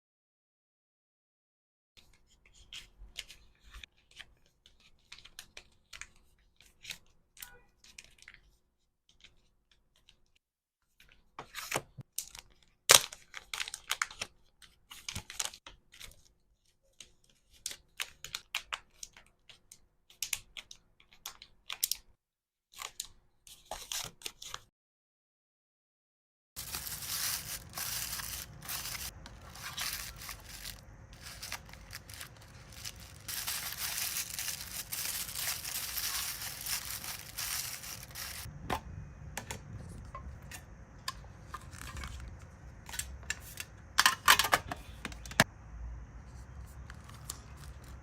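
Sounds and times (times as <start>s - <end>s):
plastic packaging rustles and taps: 26.6s - 38.5s.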